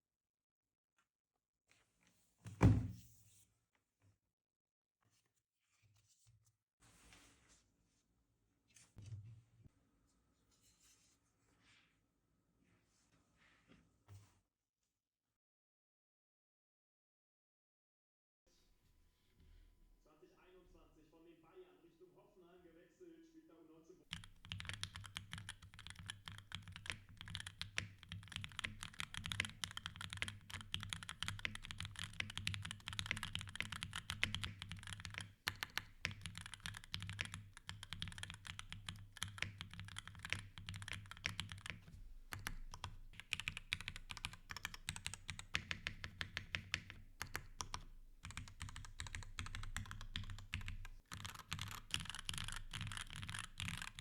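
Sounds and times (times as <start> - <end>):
fast mechanical keyboard typing: 24.1 - 54.0.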